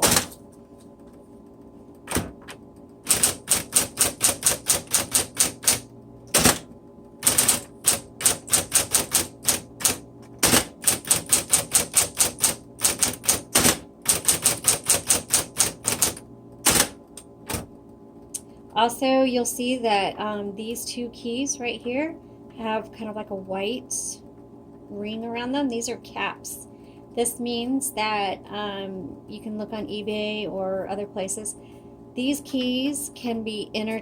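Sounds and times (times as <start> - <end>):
typewriter key strikes: 0.0 - 0.4, 3.1 - 6.6, 7.2 - 17.0
typewriter motor humming: 0.0 - 0.4, 2.0 - 17.7.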